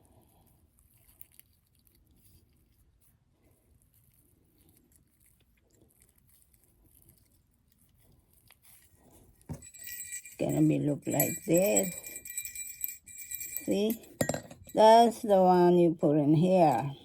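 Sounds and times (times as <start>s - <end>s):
faint handling of craft materials: 0.0s - 17.0s.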